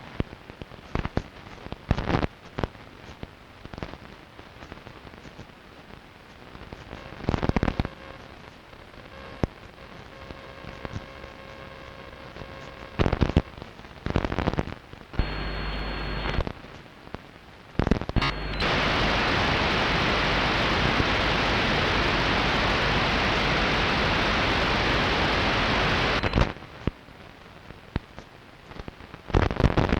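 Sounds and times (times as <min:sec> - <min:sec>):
radio static crackling: 0:00.0 - 0:29.9
steady radio hiss: 0:00.0 - 0:29.9
radio buzzing burst: 0:06.9 - 0:16.5, 0:17.8 - 0:26.6.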